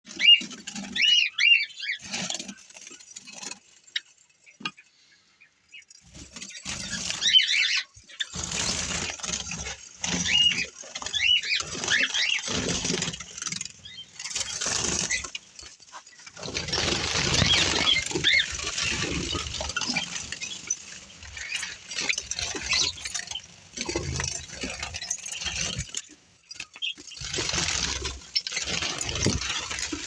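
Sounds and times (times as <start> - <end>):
sparrows chirping: 0.1 - 30.0
rustling noise: 8.3 - 26.0, 27.1 - 30.0.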